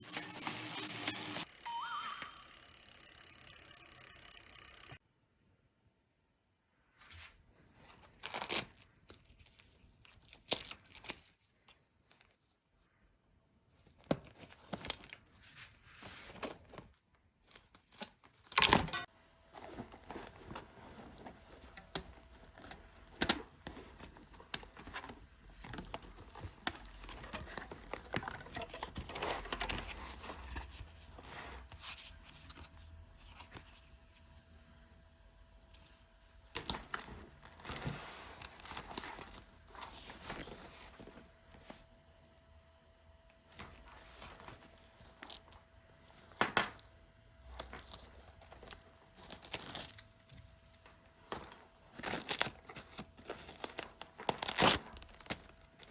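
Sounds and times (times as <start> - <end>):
bags rustling and crinkling: 19.4 - 31.7, 47.4 - 55.9.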